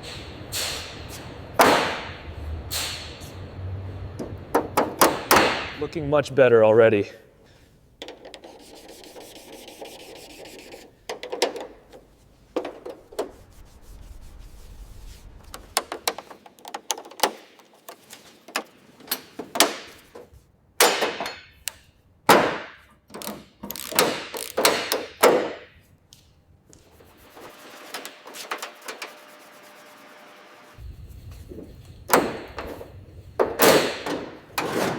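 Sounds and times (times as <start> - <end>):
tool clicks and knocks: 8.0 - 8.6, 11.0 - 13.3, 23.1 - 25.6
tool rubbing and scraping: 8.0 - 18.9, 26.8 - 34.9.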